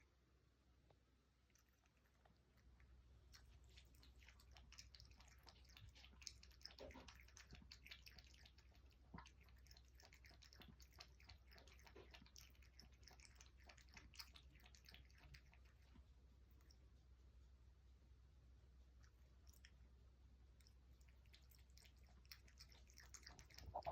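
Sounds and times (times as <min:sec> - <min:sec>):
cat mouth wet clicking: 0:01.5 - 0:15.9, 0:20.6 - 0:23.9.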